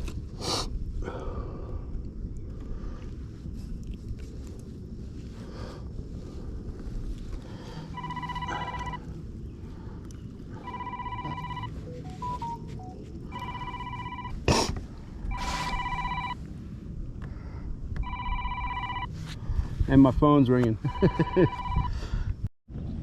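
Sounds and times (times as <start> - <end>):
mobile phone ringtone: 8.0 - 9.0, 10.6 - 14.4, 15.3 - 16.4, 18.0 - 19.1, 20.9 - 22.0.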